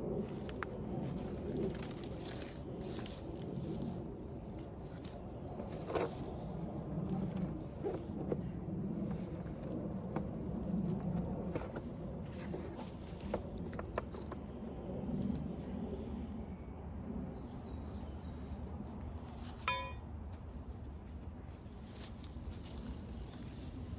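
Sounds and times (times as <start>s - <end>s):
rustling and scraping in soil: 0.0s - 16.5s, 17.4s - 23.9s
light metal knocks: 19.6s - 20.0s.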